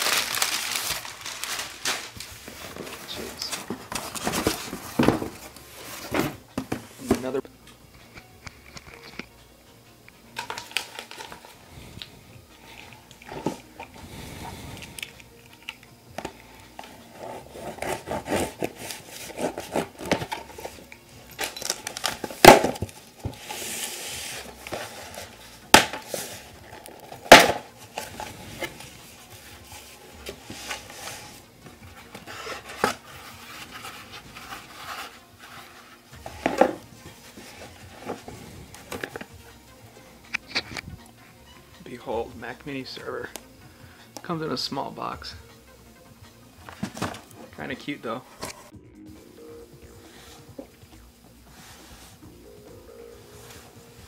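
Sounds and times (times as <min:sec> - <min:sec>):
packaging rustling and crinkling: 0:00.0 - 0:07.2, 0:16.9 - 0:39.4.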